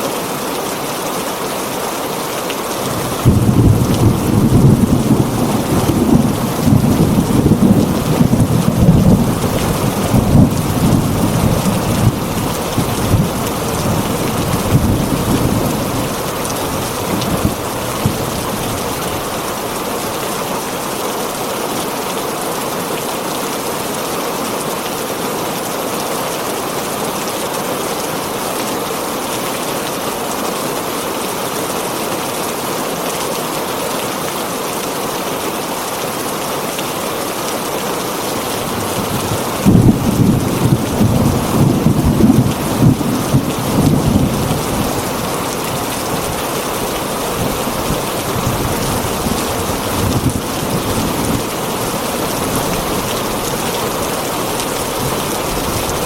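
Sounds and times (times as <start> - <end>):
heavy rain on a tin roof: 0.0 - 56.0
thunder rumble: 2.9 - 19.4, 38.6 - 53.2.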